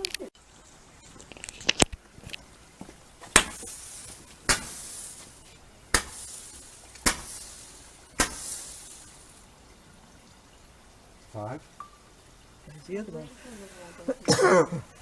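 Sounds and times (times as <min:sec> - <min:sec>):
fizzing crackle: 0:00.0 - 0:14.3
fireworks banging: 0:03.2 - 0:09.4.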